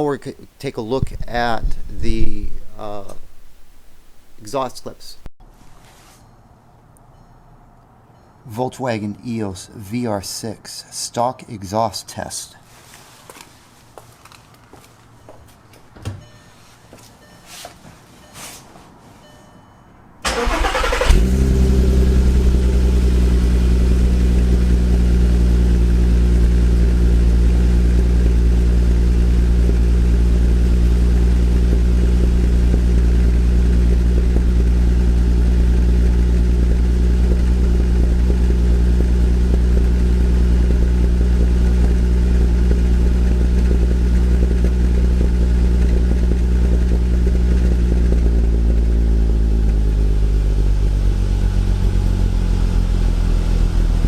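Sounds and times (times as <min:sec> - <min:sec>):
car engine idling: 0:00.0 - 0:05.3, 0:20.2 - 0:54.0.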